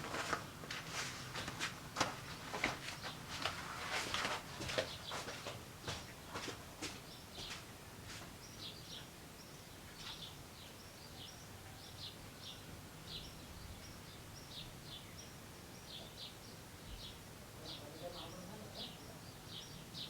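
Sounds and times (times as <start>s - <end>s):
faint bird chirping: 8.4s - 20.0s.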